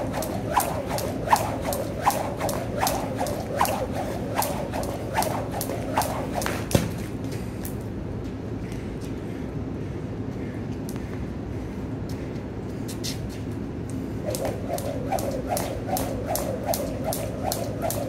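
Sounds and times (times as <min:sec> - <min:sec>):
jump rope slapping floor: 0:00.0 - 0:07.1, 0:14.3 - 0:18.0.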